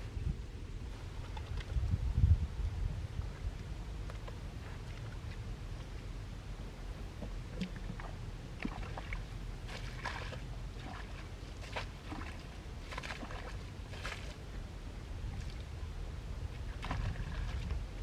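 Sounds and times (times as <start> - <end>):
low rumble: 0.0 - 13.3
shallow water splashing: 6.6 - 18.0.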